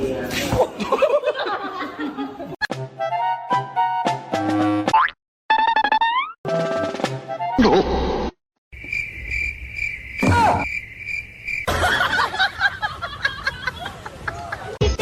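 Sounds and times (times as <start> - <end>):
crickets chirping: 8.7 - 12.9.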